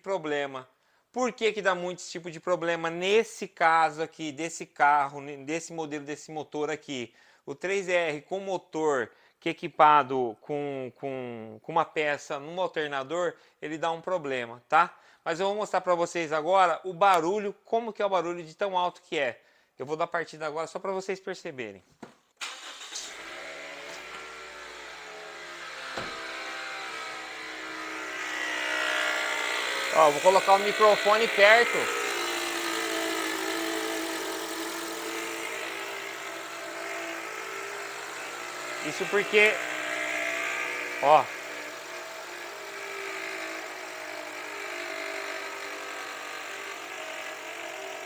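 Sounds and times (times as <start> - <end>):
engine mechanical whirring: 22.4 - 32.7
alternator pulley noise: 23.0 - 42.6
short knock: 26.0 - 26.2.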